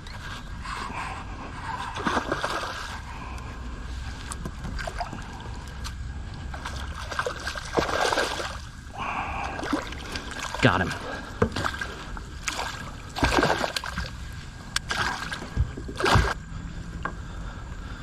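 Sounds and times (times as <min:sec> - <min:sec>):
fish splashing in water: 0:01.9 - 0:03.1, 0:06.5 - 0:16.4.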